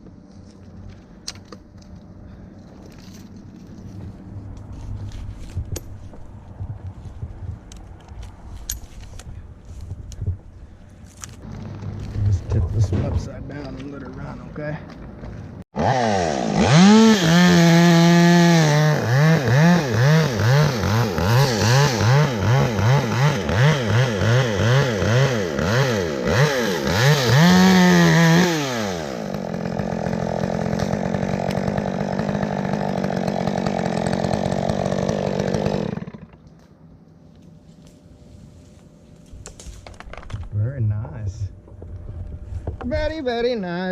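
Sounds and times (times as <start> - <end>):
chainsaw revving and idling: 15.8 - 36.5.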